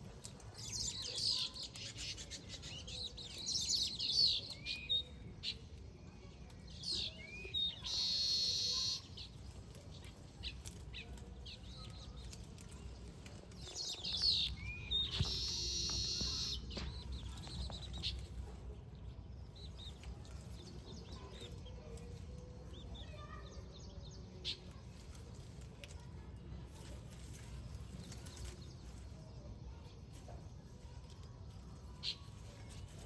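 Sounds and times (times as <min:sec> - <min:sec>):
birds chirping: 0:00.0 - 0:33.0
harsh buzzy bird calls: 0:07.6 - 0:09.2, 0:14.2 - 0:16.7.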